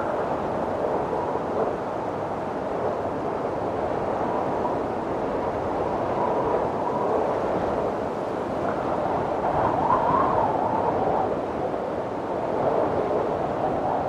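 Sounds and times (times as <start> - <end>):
wind howling: 0.0 - 14.0.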